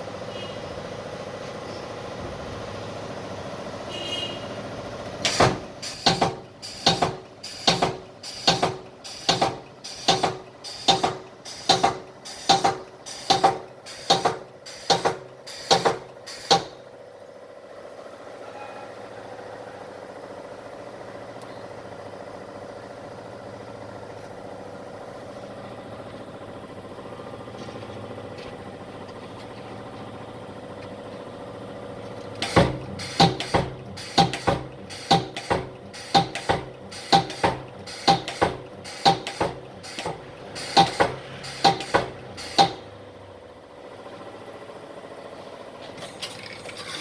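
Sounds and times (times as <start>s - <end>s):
spot welder clacks: 5.0s - 16.9s, 32.0s - 43.0s
steady machine hum: 19.2s - 45.8s.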